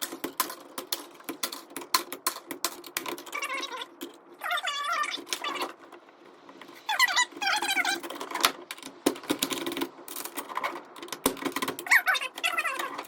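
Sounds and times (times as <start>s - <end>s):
hand tools clicking on wires: 0.0s - 4.5s, 7.5s - 13.0s
wavering high squeaks: 3.2s - 8.7s, 11.8s - 13.0s.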